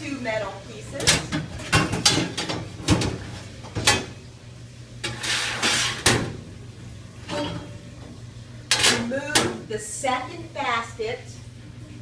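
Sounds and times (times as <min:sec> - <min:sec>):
sliding scrape: 0:05.0 - 0:06.1.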